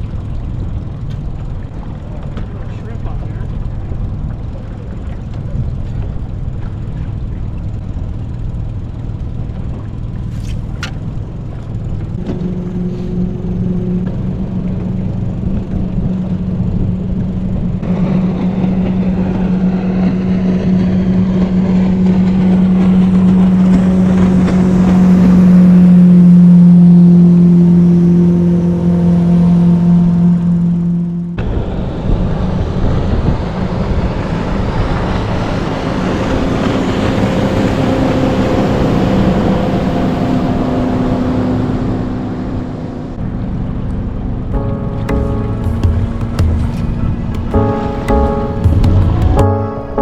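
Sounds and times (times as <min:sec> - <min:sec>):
motorboat engine humming: 0:22.0 - 0:30.3, 0:44.6 - 0:50.0.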